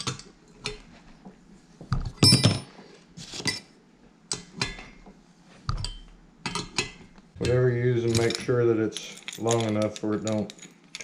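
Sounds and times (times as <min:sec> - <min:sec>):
metal clinks and clanks: 0:08.0 - 0:11.0.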